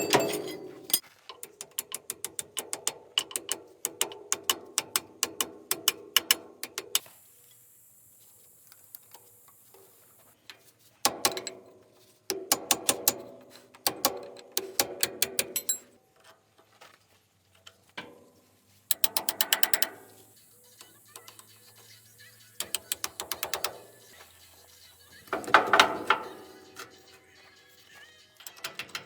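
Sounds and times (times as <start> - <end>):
ratchet wrench clicking: 0.9 - 7.1, 18.9 - 27.0, 28.4 - 29.0.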